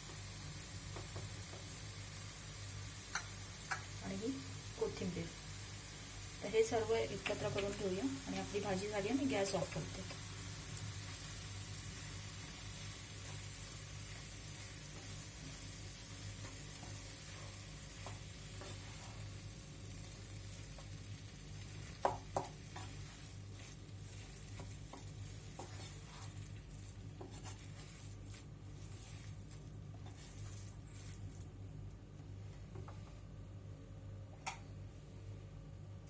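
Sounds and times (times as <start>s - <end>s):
food sizzling in a pan: 0.0s - 31.4s
spoon stirring and scraping: 21.6s - 31.4s.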